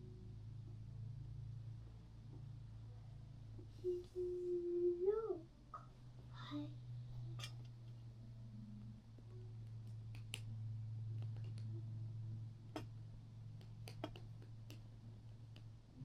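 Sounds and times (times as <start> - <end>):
steady low hum: 0.0 - 16.0
small clicks and taps: 11.1 - 11.8.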